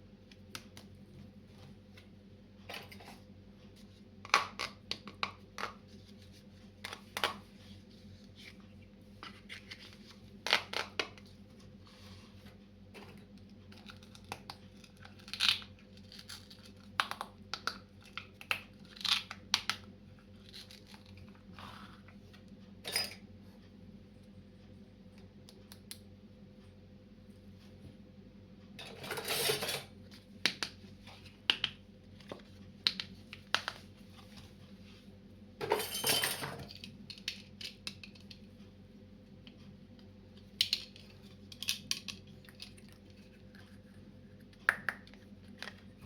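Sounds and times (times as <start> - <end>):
faint steady hum: 0.0 - 46.0
packaging crinkling and tearing: 13.8 - 19.4.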